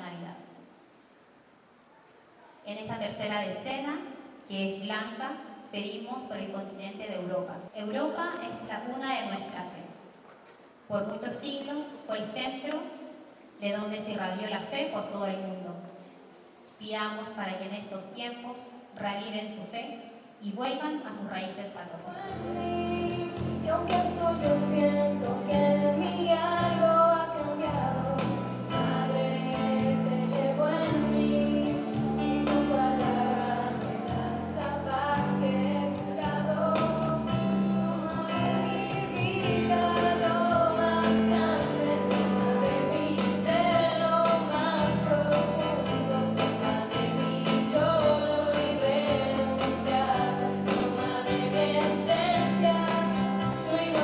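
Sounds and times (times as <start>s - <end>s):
song with singing and beat: 22.2s - 54.0s.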